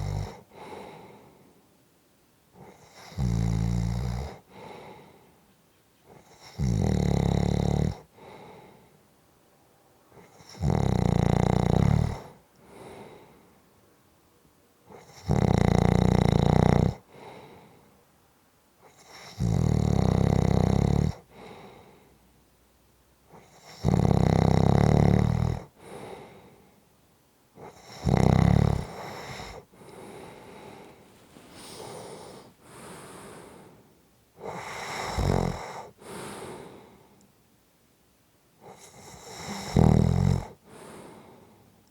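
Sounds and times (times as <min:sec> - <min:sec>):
person snoring: 0:00.0 - 0:01.0, 0:06.2 - 0:08.6, 0:10.2 - 0:13.2, 0:14.9 - 0:17.0, 0:18.9 - 0:21.6, 0:23.4 - 0:26.2, 0:27.6 - 0:33.8, 0:34.4 - 0:36.9, 0:38.6 - 0:41.4
soft breathing out: 0:12.6 - 0:13.6, 0:28.9 - 0:34.0, 0:35.7 - 0:37.2, 0:40.6 - 0:41.8.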